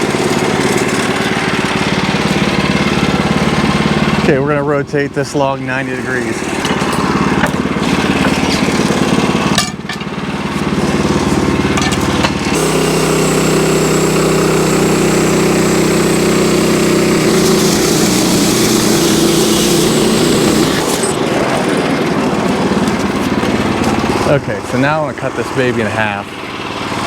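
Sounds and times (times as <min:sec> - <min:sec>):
sawmill engine running: 0:00.0 - 0:27.0.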